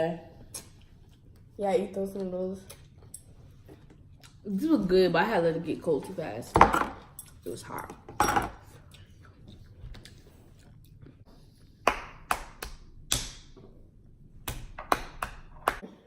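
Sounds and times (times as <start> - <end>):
utensils clinking against bowls: 6.6 - 8.7.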